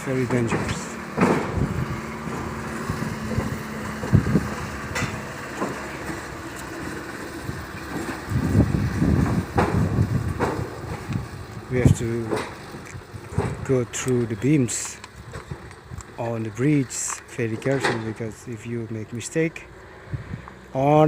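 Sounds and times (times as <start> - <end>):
truck engine running: 0.0 - 21.0
truck rumbling over bridge beams: 0.0 - 21.0
knocks: 0.4 - 1.6.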